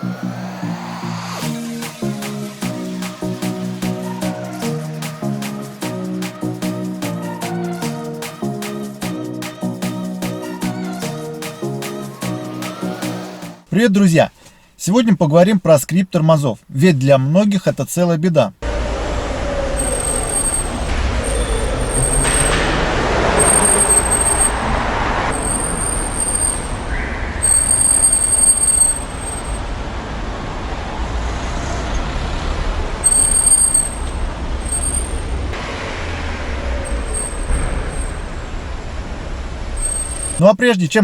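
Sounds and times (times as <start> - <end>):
car rolling rumble: 18.6 - 40.4
disc brakes squealing: 19.2 - 29.6, 33.0 - 35.6, 36.6 - 38.3, 39.8 - 40.4.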